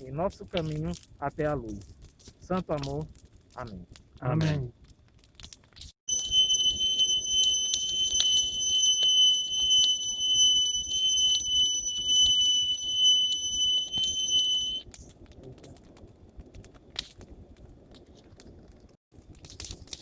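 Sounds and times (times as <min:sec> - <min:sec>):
sharp crackles: 0:00.0 - 0:20.0
high-pitched whine: 0:06.1 - 0:14.8.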